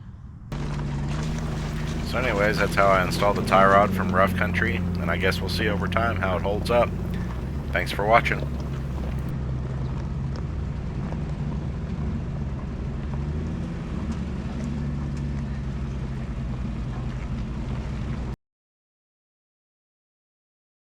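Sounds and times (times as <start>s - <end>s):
vehicle engine idling: 1.2s - 9.9s.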